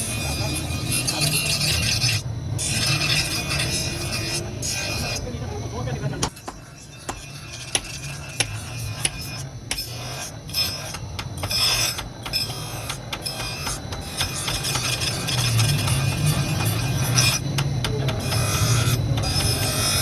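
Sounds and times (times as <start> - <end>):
knife scraping on sharpening stone: 6.3 - 17.5, 18.1 - 20.0.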